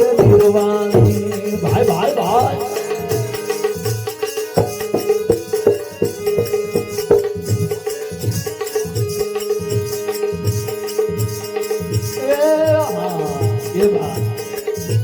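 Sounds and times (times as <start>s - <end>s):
hand drum playing: 3.1s - 9.8s
low repeating drum beat: 4.6s - 7.8s.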